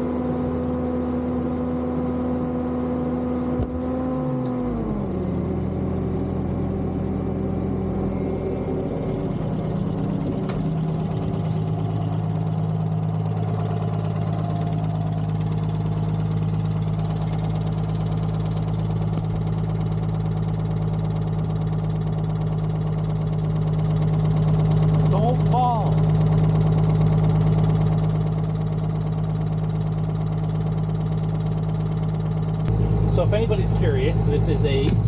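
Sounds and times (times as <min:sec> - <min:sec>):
diesel truck engine running: 0:00.0 - 0:35.0.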